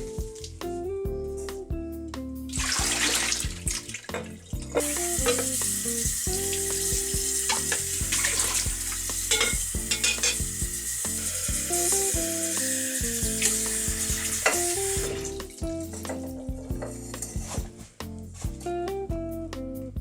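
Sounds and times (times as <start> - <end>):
guitar music: 0.0 - 20.0
steady hiss: 4.6 - 18.0.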